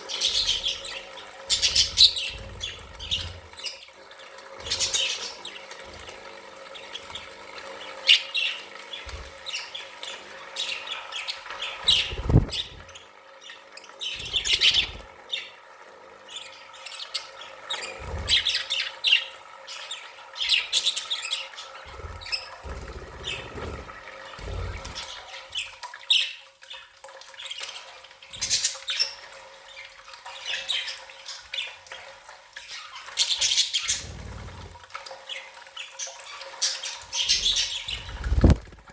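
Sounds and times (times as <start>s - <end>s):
budgerigars chirping: 0.0s - 3.8s, 4.7s - 5.7s, 7.9s - 13.0s, 14.0s - 15.5s, 36.0s - 38.6s.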